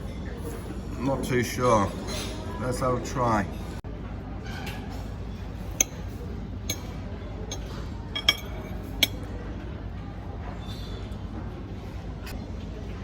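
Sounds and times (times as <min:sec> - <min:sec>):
low background hum: 0:00.0 - 0:13.0
cutlery clinking on plate: 0:06.7 - 0:09.3.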